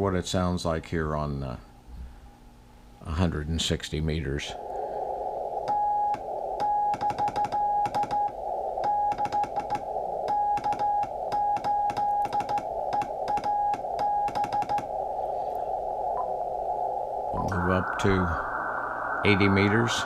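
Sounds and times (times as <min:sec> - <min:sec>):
receiver hiss: 0:00.0 - 0:20.0
morse code tone: 0:05.7 - 0:14.9.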